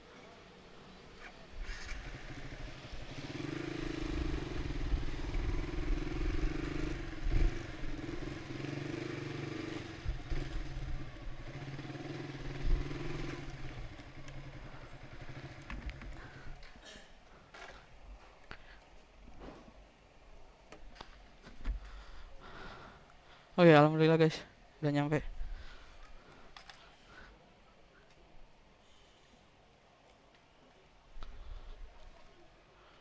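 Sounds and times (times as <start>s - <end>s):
motorcycle engine running: 1.6s - 16.6s.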